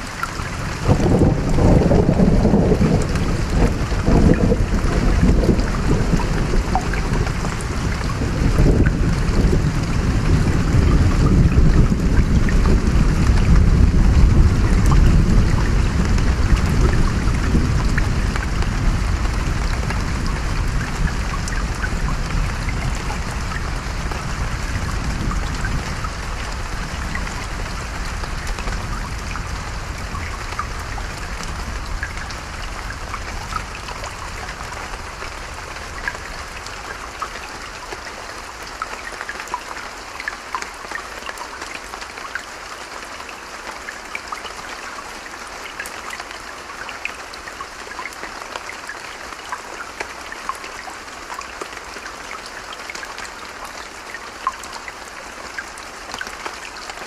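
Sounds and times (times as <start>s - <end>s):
flowing stream: 0.0s - 57.0s
rain pattering: 0.0s - 57.0s
distant thunder rumbling: 0.8s - 9.6s.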